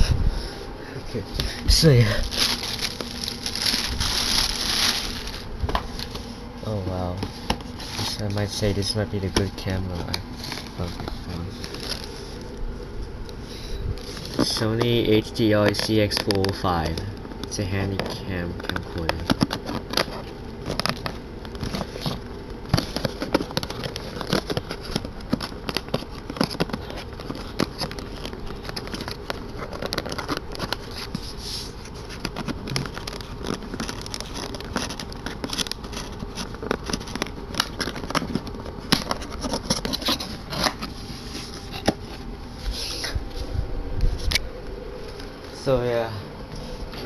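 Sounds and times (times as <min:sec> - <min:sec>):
cardboard box being opened: 0:01.8 - 0:06.2, 0:18.7 - 0:43.4.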